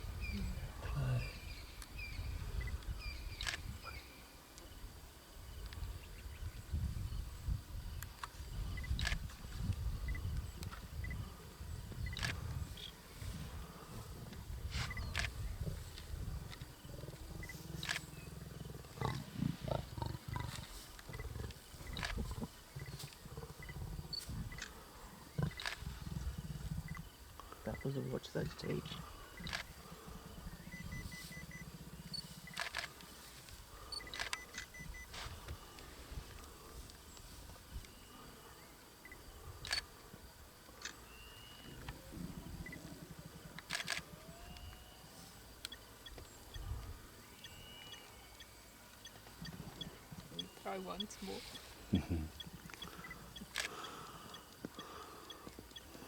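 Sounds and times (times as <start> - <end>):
faint bird chirps: 0.1 - 4.8, 5.6 - 14.0, 14.8 - 15.7, 20.2 - 32.9, 40.8 - 56.0
lions growling and snarling: 13.2 - 27.1, 28.8 - 33.2, 41.7 - 45.0
camera shutter clicks: 32.5 - 33.0, 34.0 - 34.8, 43.6 - 44.8.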